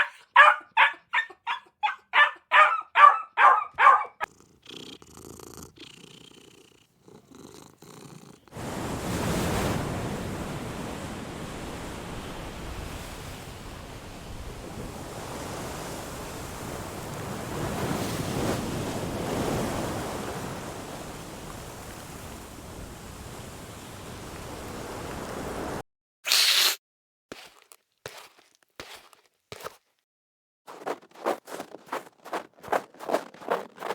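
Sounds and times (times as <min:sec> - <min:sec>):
cat purring: 0:04.2 - 0:08.5.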